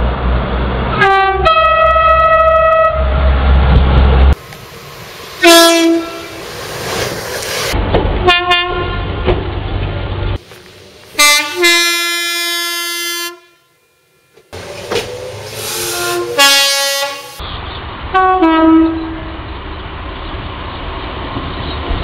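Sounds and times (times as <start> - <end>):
train rumble: 0.0 - 12.8, 14.0 - 22.0
train two-tone horn: 1.0 - 3.2, 5.4 - 6.4, 8.2 - 9.1, 11.2 - 14.4, 15.1 - 17.4, 18.1 - 19.4.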